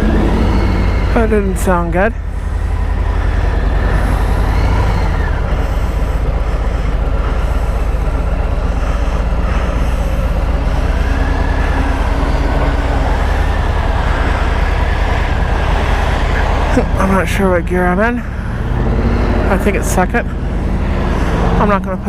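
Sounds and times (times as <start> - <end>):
motorcycle engine rumbling: 0.0 - 22.0.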